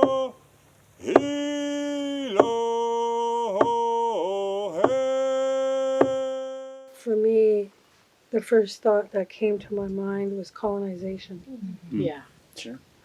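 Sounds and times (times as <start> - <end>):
voice chanting long notes: 0.0 - 0.4, 1.0 - 6.9.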